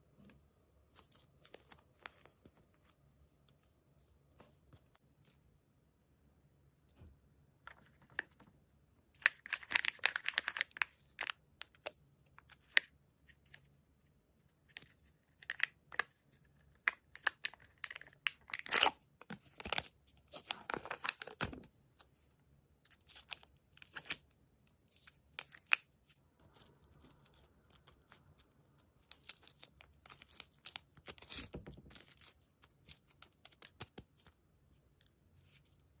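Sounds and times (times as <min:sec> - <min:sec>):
wrapping tearing and crinkling: 0:16.9 - 0:21.5.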